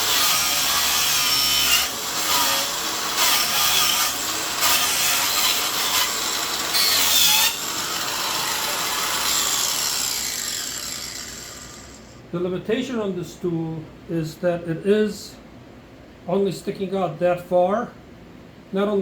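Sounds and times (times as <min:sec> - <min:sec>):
angle grinder cutting wood: 0:00.0 - 0:12.2.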